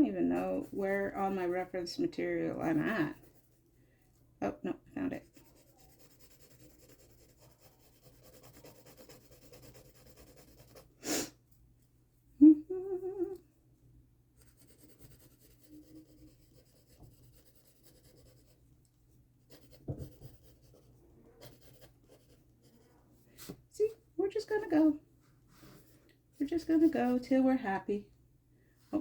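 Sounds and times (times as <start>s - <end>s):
pencil scratching on paper: 0.2s - 3.6s, 5.1s - 11.3s, 14.4s - 18.6s, 19.5s - 23.6s, 25.6s - 27.3s
person humming a note: 12.4s - 13.4s.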